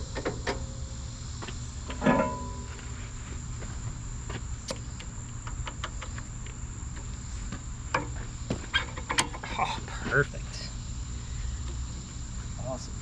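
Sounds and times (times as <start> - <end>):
metal clank with short ring: 2.0 - 2.8.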